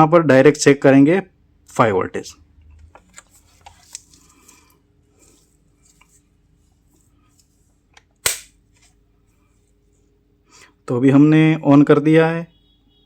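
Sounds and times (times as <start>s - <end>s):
power supply switch click: 8.2s - 8.5s.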